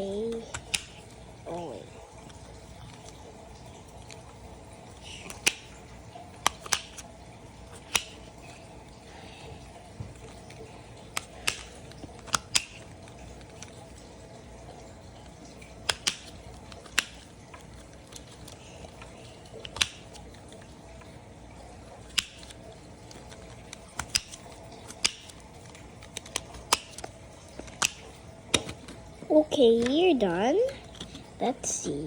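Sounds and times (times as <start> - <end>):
plastic puzzle toy clicks: 0.5 - 1.0, 7.9 - 8.2, 11.2 - 12.8, 15.8 - 17.2, 19.6 - 20.1, 22.1 - 22.5, 26.0 - 27.0, 27.7 - 28.8.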